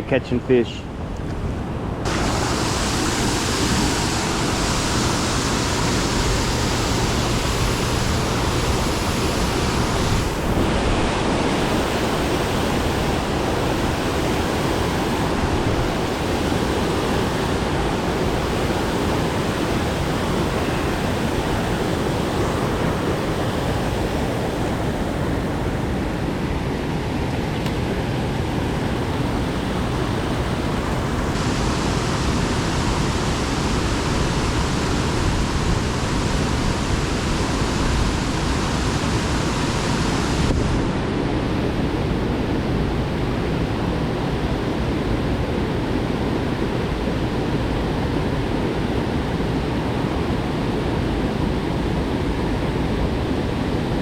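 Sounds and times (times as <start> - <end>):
water rushing: 1.8 - 43.6.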